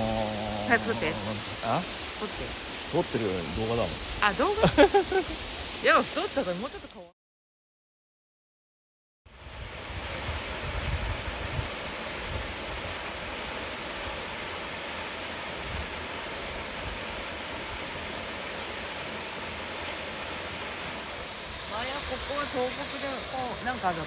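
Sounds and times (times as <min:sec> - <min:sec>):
low buffeting: 0:00.0 - 0:02.2
waterfall roaring: 0:00.0 - 0:06.9, 0:11.6 - 0:24.0.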